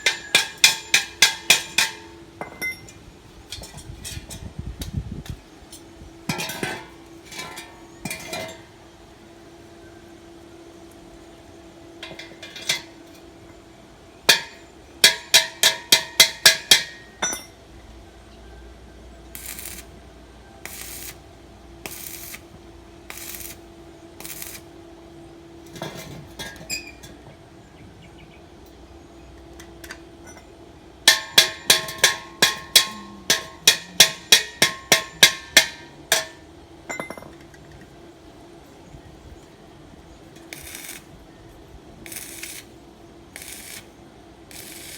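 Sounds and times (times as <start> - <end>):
hammer striking steel: 0.0 - 2.9, 14.3 - 17.6, 31.1 - 37.3.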